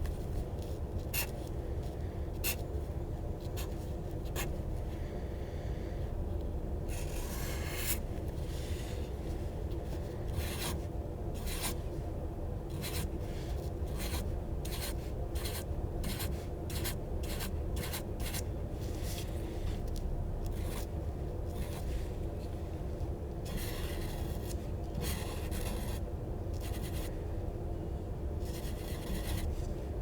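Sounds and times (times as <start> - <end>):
steady low hum: 0.0 - 30.0
scribbling on paper: 0.5 - 1.5, 2.4 - 2.7, 10.3 - 10.8, 12.7 - 22.1, 23.4 - 27.2, 28.4 - 29.7.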